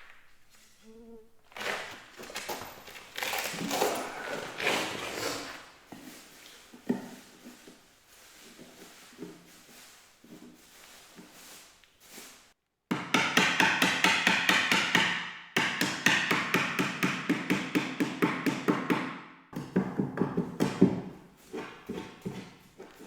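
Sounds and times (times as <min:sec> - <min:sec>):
hammer tapping: 0:12.9 - 0:22.2.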